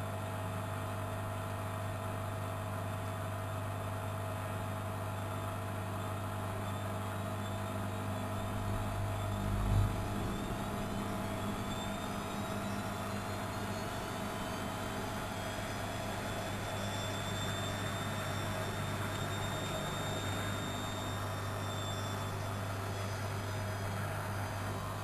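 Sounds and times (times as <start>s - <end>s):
washing machine motor hum: 7.2s - 25.0s.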